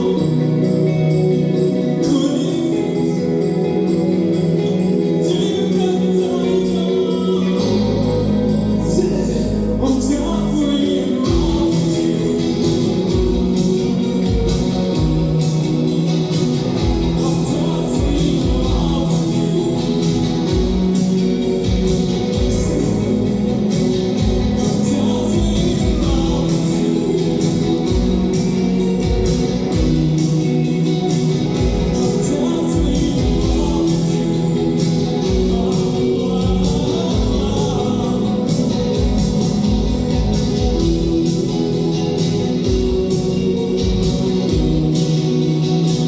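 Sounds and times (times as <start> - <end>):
drums steady beat: 0.0 - 46.0
guitar: 0.0 - 46.0.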